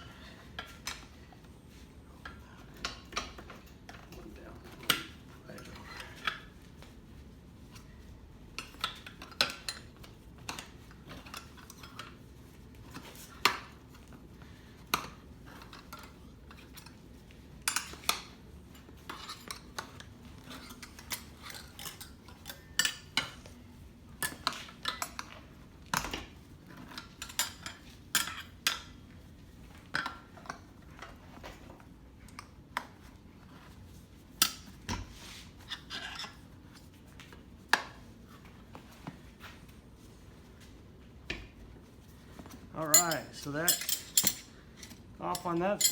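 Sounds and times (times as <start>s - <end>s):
tire spoons clinking on metal rim: 42.9s - 44.5s, 45.3s - 45.9s.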